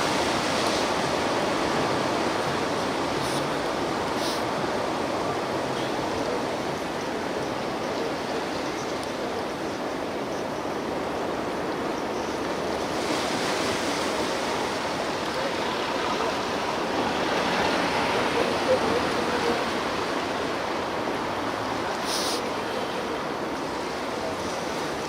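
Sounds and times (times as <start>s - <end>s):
ocean waves breaking: 0.0s - 25.0s.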